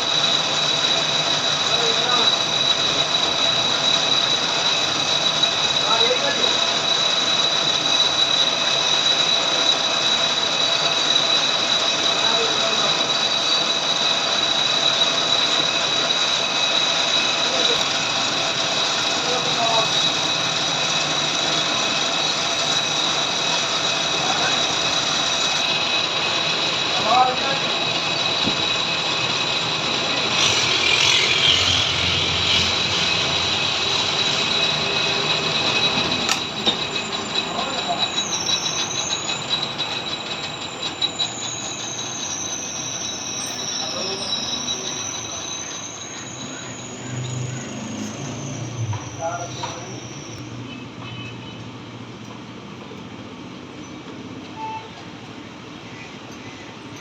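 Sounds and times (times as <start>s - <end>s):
lathe running with high whine: 0.0s - 51.6s
brief higher tone: 54.6s - 55.0s.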